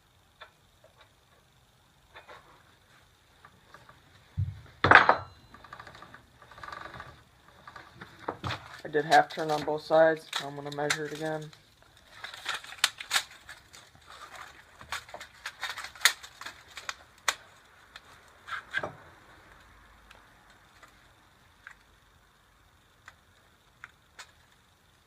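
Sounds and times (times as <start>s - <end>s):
tape measure clicks and rattles: 8.7s - 11.6s.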